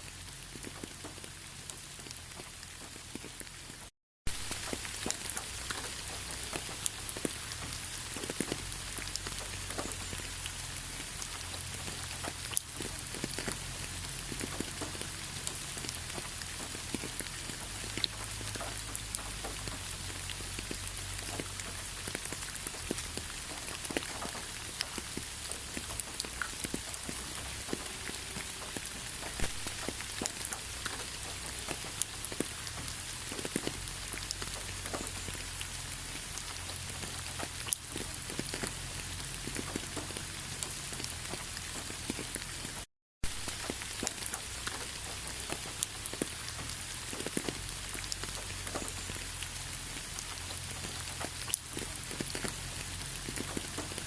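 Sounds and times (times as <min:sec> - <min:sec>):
raindrops ticking close by: 0:00.0 - 0:54.0
steady rain hissing: 0:00.0 - 0:54.0.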